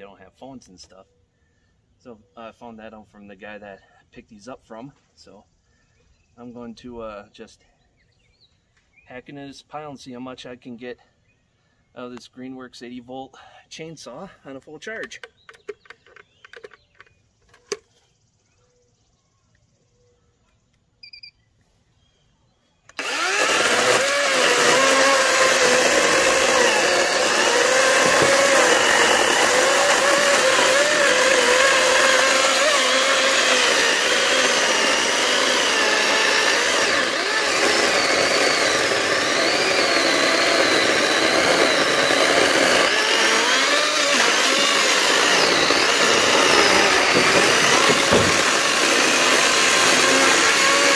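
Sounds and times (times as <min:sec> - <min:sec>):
battery chainsaw cutting wood: 0:22.9 - 0:50.9.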